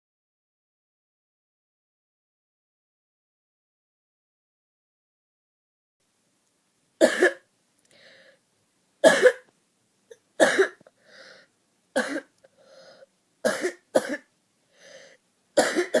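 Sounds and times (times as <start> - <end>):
woman coughing: 7.0 - 7.4, 9.0 - 9.5, 10.4 - 10.8, 12.0 - 12.3, 13.5 - 14.3, 15.6 - 16.0
breath drawn in: 12.4 - 13.1, 14.7 - 15.2.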